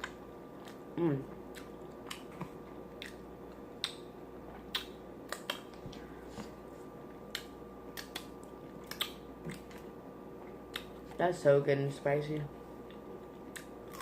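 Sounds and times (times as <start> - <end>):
steady low hum: 0.0 - 14.0
chewing and lip smacking: 1.5 - 5.9, 7.3 - 11.2, 12.8 - 14.0.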